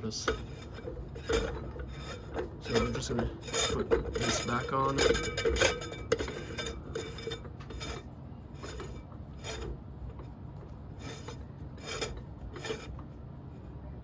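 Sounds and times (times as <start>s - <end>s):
cap scraping on screw threads: 0.0s - 13.2s.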